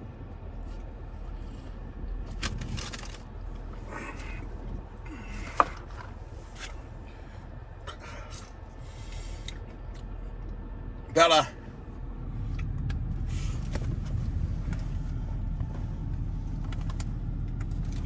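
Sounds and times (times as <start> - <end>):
low car hum: 0.0 - 18.0
rustling and scraping handling: 0.7 - 8.7.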